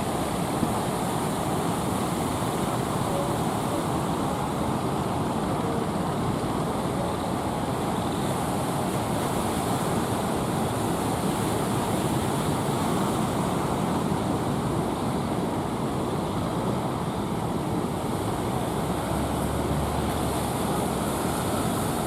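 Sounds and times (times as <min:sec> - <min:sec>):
ocean surf breaking: 0:00.0 - 0:22.0.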